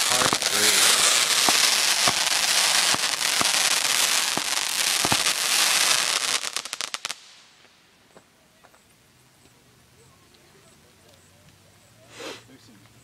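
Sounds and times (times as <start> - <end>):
fireworks crackling and banging: 0.0 - 8.8.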